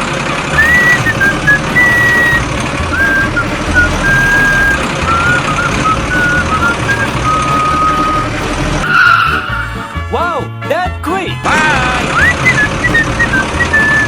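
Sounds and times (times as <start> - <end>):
small motors grinding: 0.5 - 9.5
short high whistling tones: 0.5 - 9.9.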